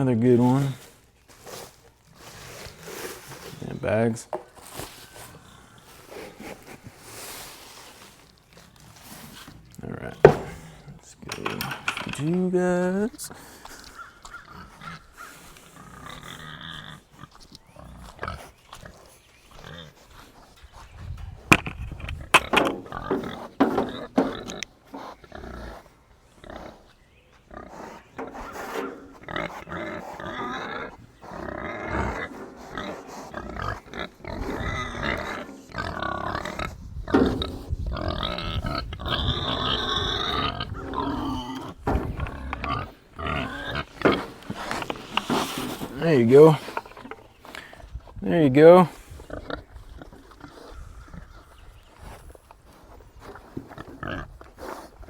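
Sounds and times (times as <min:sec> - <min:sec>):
pigs grunting: 0:02.2 - 0:07.4, 0:08.4 - 0:55.0
sharp knocks: 0:10.2 - 0:10.6.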